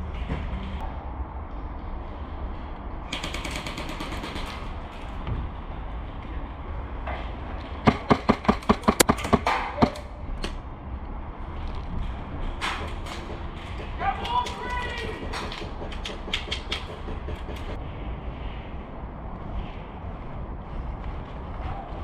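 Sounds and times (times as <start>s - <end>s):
low rumble of wind: 0.0s - 22.0s
airsoft gunfire: 3.1s - 4.6s, 7.8s - 10.0s.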